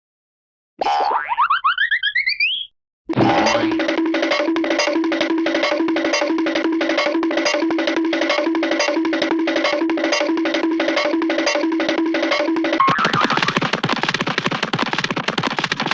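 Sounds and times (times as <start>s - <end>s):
woodblock-like taps: 3.4s - 15.9s.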